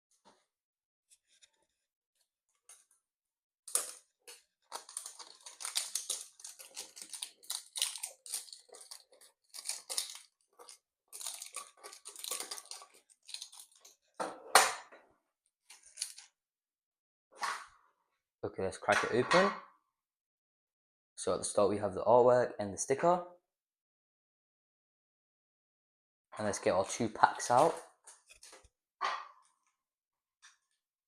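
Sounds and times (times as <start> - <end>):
plastic wrap crinkling and tearing: 3.7 - 14.0, 15.7 - 16.3.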